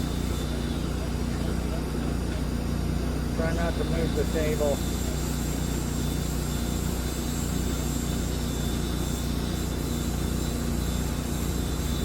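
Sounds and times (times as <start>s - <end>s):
low machine hum: 0.0s - 12.0s
thin high whine: 3.3s - 12.0s.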